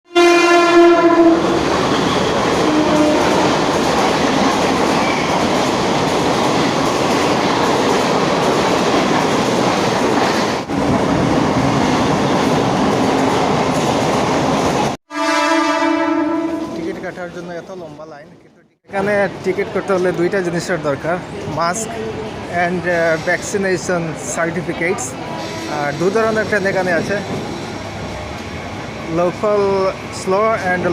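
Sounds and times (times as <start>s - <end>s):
train horn: 0.1s - 1.6s, 2.6s - 3.5s, 15.1s - 16.9s
train wheels rumbling on track: 0.1s - 15.0s, 19.0s - 30.9s.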